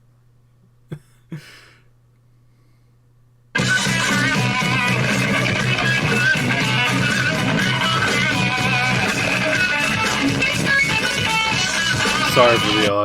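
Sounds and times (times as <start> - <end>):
rock band playing live: 3.6 - 12.9
electric guitar: 3.6 - 13.0.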